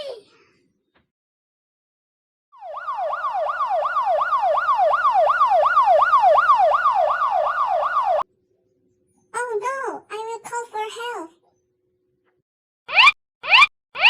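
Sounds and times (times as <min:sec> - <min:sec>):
electronic toy siren wailing: 0:02.6 - 0:08.3, 0:12.9 - 0:14.0.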